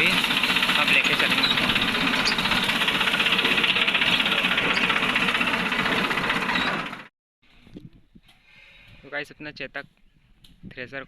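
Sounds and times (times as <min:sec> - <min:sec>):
tractor diesel engine chugging: 0:00.0 - 0:07.1.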